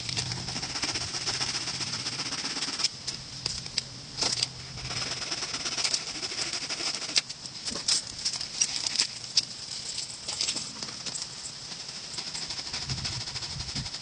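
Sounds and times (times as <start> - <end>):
saw rasping through gourd: 0.3 - 2.9, 4.7 - 7.2.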